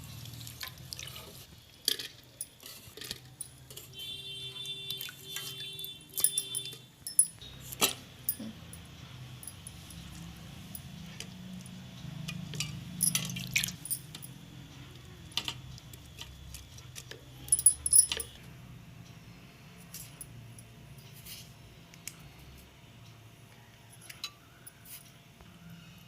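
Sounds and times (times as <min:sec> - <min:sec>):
metal utensils clinking on cookware: 0:06.2 - 0:08.8, 0:12.3 - 0:14.4, 0:17.4 - 0:18.4.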